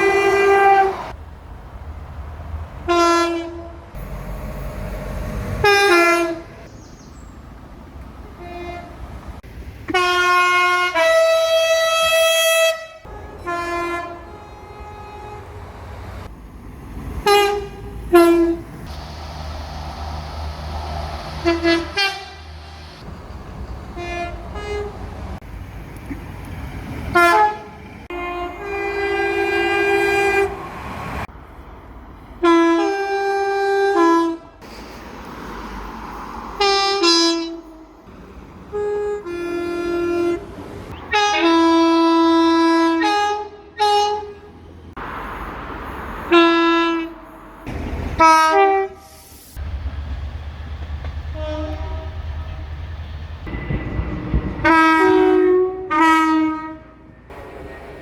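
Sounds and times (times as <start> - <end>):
train horn blasts: 0.0 - 1.1, 2.9 - 3.9, 5.6 - 6.7, 8.4 - 9.0, 9.9 - 15.8, 17.2 - 18.7, 21.3 - 22.6, 24.0 - 25.1, 27.1 - 30.7, 32.4 - 34.6, 36.6 - 37.9, 38.7 - 44.5, 46.3 - 47.2, 48.2 - 49.2, 51.3 - 52.8, 53.4 - 57.2.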